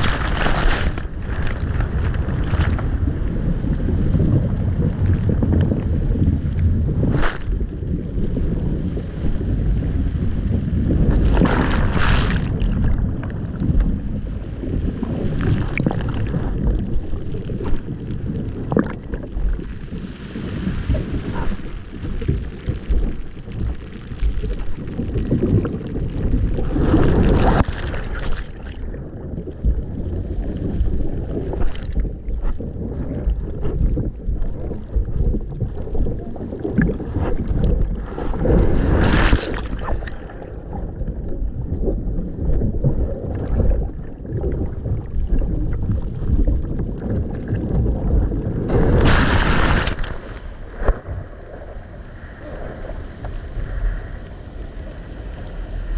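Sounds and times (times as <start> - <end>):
wind on microphone: 0.0 - 55.9
rushes of noise: 48.1 - 55.9.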